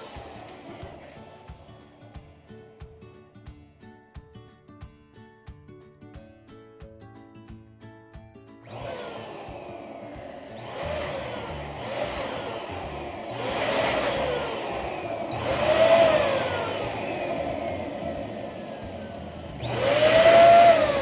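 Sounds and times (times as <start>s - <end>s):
electric balloon pump blowing air: 0.0s - 3.0s, 8.7s - 21.0s
music: 0.0s - 21.0s.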